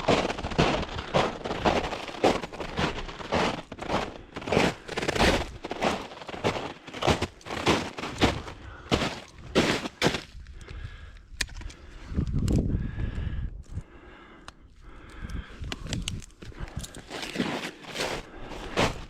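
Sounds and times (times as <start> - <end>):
footsteps crunching: 0.0 - 10.4, 16.4 - 19.0.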